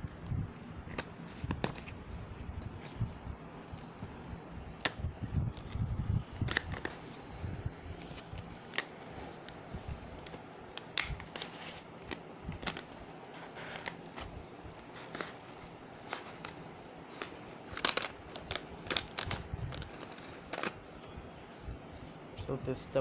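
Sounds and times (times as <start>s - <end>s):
packaging clicks and taps: 0.1s - 2.0s, 6.4s - 20.8s
packaging rustling: 3.8s - 20.9s.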